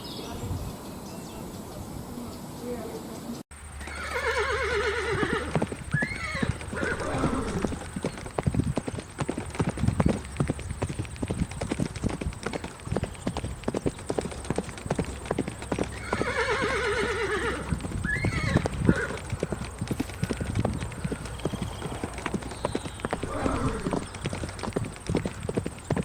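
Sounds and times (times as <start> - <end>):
hooves clip-clopping: 3.6 - 26.0
horse whinnying: 3.8 - 8.2, 15.9 - 26.0.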